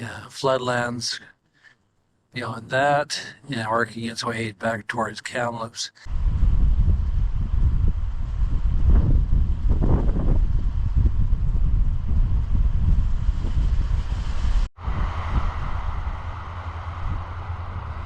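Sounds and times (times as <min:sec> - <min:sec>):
wind buffeting microphone: 0:06.1 - 0:18.0.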